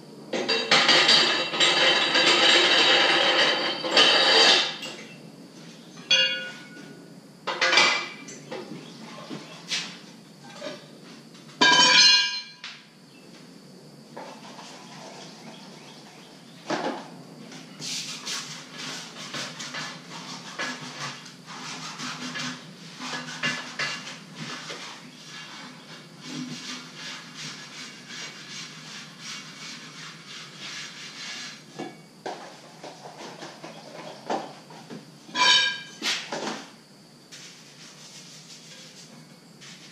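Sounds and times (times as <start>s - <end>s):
tire scraping and rattling on rim: 0.6s - 4.9s
metal tools clanking on wheel rim: 6.0s - 6.9s, 35.3s - 36.0s.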